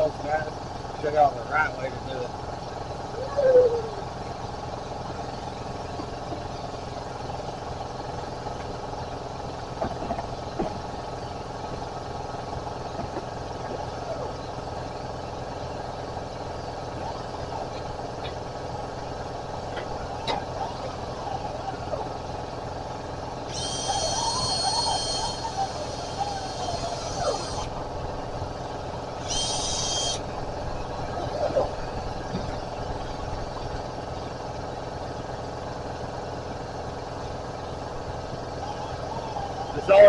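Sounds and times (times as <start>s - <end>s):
steady mechanical hum: 0.0s - 40.0s
high whine: 5.1s - 33.8s.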